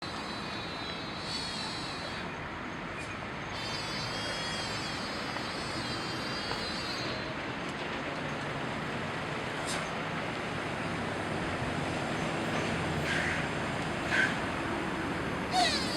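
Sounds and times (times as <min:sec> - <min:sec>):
deer calling: 0:15.5 - 0:15.9.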